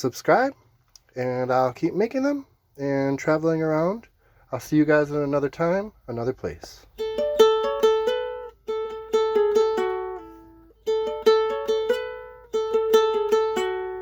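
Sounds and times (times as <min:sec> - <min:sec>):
plucked string melody: 0:06.8 - 0:14.0.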